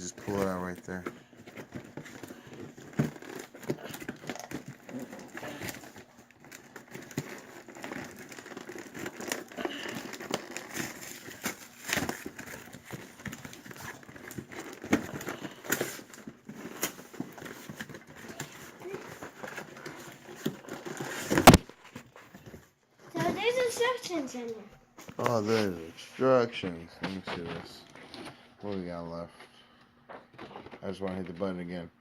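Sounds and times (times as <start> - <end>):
packaging crinkling and rustling: 0.0 - 29.0, 30.1 - 31.8
clicks and crackles: 0.1 - 22.6.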